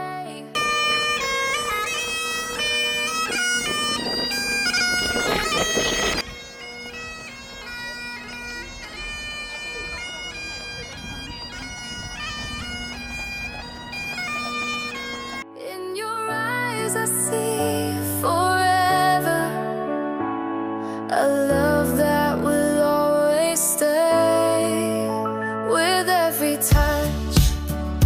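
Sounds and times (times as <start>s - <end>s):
bagpipes playing a melody: 0.6s - 15.4s.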